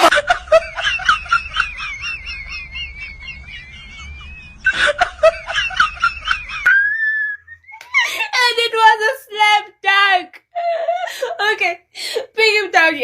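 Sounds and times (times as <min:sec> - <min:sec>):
high-pitched snickering laugh: 0:00.0 - 0:08.2.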